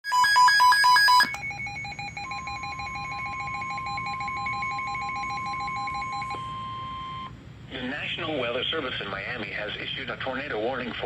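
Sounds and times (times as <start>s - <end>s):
steady alarm tone: 0.0s - 7.3s
rapid pulsing beep: 0.1s - 7.3s.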